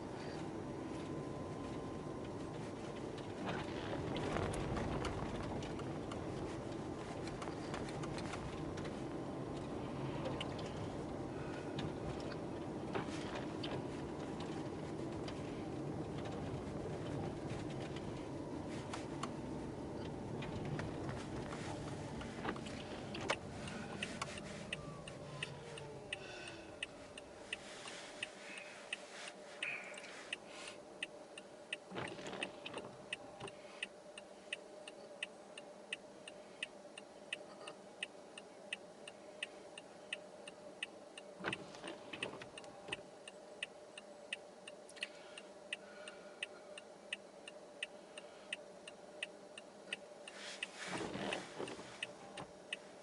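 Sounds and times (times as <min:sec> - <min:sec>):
road noise: 0:00.0 - 0:53.0
car indicator ticking: 0:17.0 - 0:27.6.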